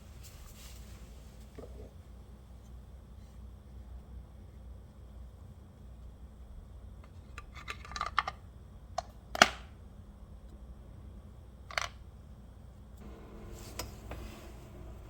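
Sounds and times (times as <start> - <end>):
low steady hum: 12.3 - 15.0.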